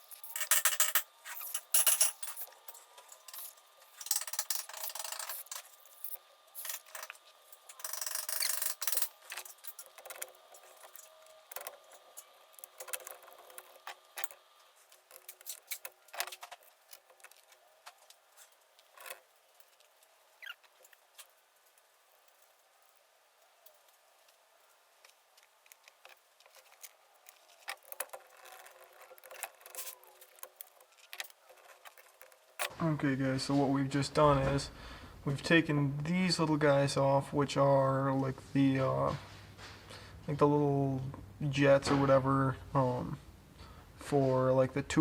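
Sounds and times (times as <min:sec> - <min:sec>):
scraping and rubbing metal: 0:00.0 - 0:21.4, 0:26.5 - 0:32.8
small metal parts clicking: 0:00.0 - 0:23.0, 0:25.4 - 0:32.7.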